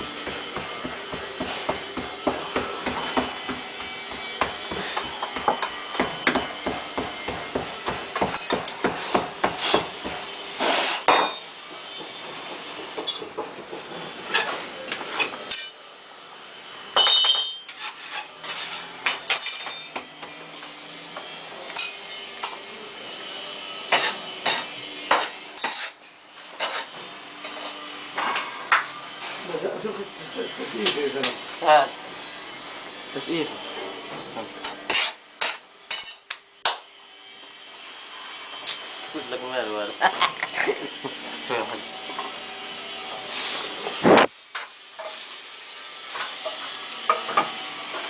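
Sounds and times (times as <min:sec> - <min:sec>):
hand tool hammering: 0:00.2 - 0:10.2.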